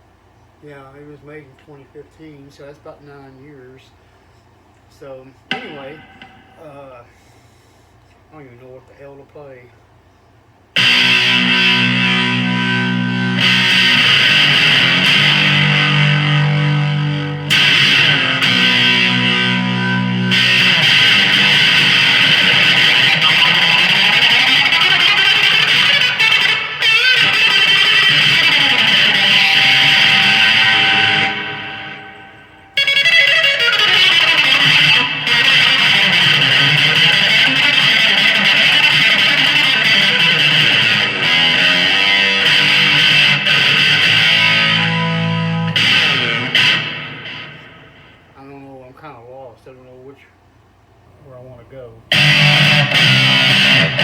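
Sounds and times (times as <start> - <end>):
electric guitar chords: 5.5 - 7.0, 10.8 - 48.4, 52.1 - 54.0.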